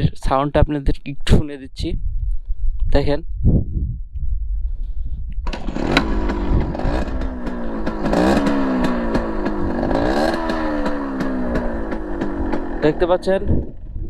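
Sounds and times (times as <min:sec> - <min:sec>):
engine throttle blips: 0:05.4 - 0:14.0
motorcycle engine starting: 0:05.4 - 0:14.0.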